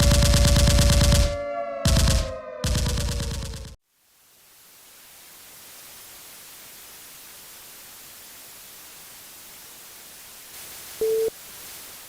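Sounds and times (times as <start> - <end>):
static hiss: 3.8 - 12.0.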